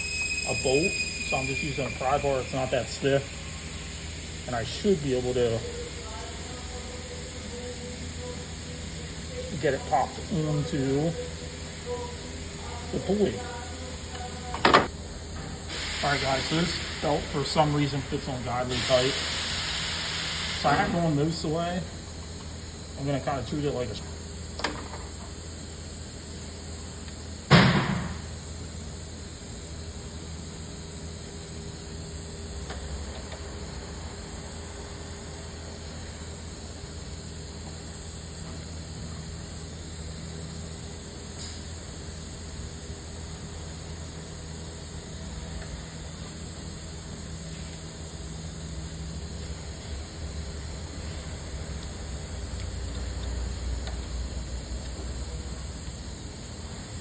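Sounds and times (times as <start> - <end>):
background hiss: 15.6 - 22.2
sharp knock: 27.5 - 28.3.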